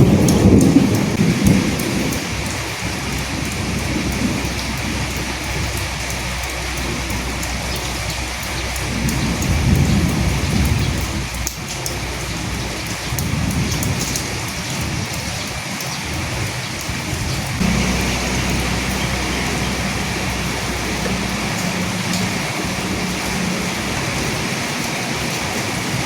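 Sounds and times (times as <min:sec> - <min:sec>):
low rolling thunder: 0:00.0 - 0:26.0
steady rain falling: 0:00.0 - 0:26.0
steady low hum: 0:17.6 - 0:24.9.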